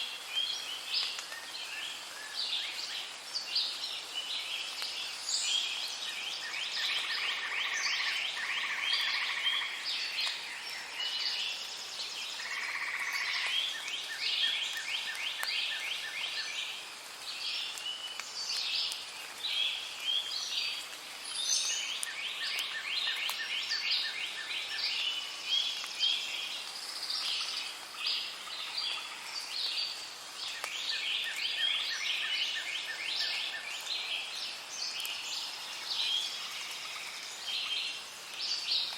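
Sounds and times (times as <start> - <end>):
birds chirping and trilling: 0.0 - 38.9.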